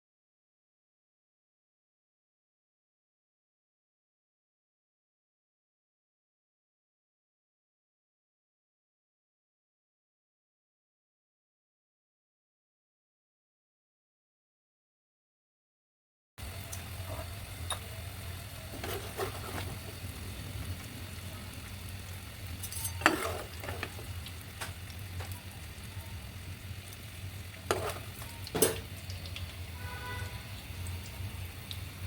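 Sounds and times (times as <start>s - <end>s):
spring rolls sizzling in oil: 16.4s - 32.0s.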